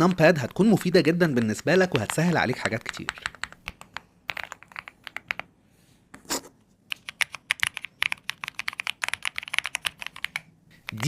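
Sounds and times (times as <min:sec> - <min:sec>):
mechanical keyboard keys clacking: 0:06.9 - 0:11.0.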